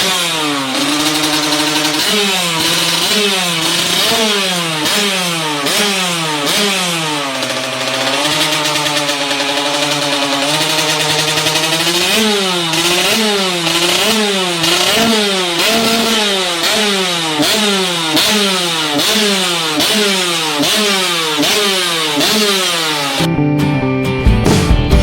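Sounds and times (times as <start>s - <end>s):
motorcycle engine revving: 0.0s - 23.3s.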